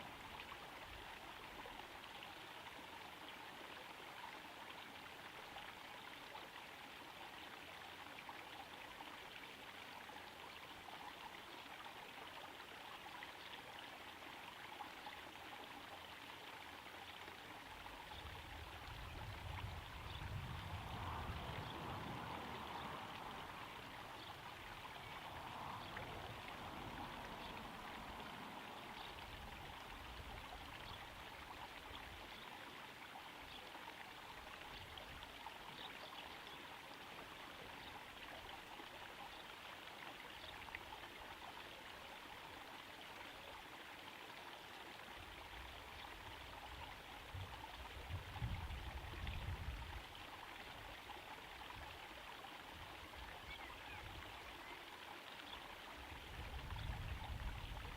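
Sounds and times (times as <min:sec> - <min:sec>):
waterfall trickling into pond: 0:00.0 - 0:57.9.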